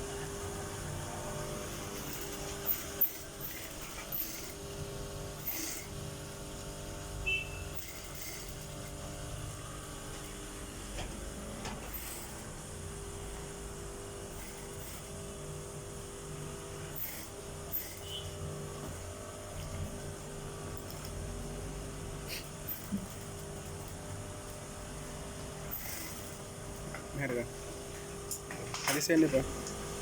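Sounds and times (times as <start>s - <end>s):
sewing machine motor hum: 0.0s - 30.0s.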